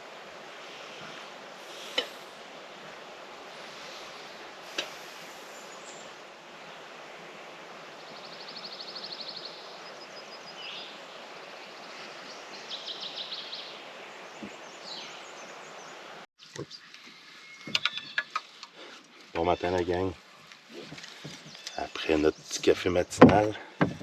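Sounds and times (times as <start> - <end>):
water: 0.0 - 24.0
wind: 0.0 - 24.0
bird trills and chirps: 16.4 - 18.5.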